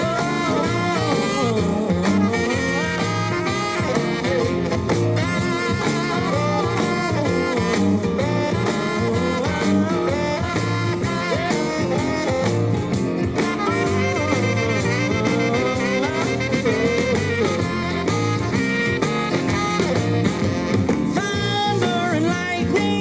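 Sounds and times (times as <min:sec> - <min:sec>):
instrumental pop band music: 0:00.0 - 0:23.0.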